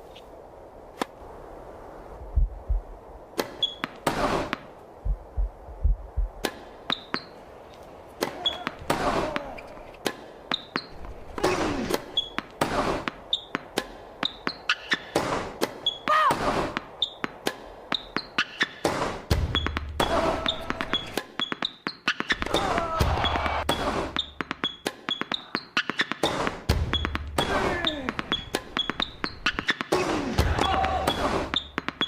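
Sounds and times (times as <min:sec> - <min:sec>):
low thuds: 0:02.2 - 0:03.1, 0:04.1 - 0:06.8
shoe squeaks: 0:03.6 - 0:04.0, 0:06.9 - 0:07.4, 0:08.4 - 0:08.7, 0:09.5 - 0:11.0, 0:12.0 - 0:12.5, 0:13.3 - 0:13.6, 0:14.2 - 0:15.1, 0:15.8 - 0:16.1, 0:17.0 - 0:17.3, 0:17.9 - 0:18.8, 0:20.4 - 0:22.7, 0:24.1 - 0:27.2, 0:27.8 - 0:30.0, 0:30.6 - 0:31.8
tennis ball hits and bounces: 0:08.2 - 0:32.0
person crying out: 0:16.1 - 0:16.4.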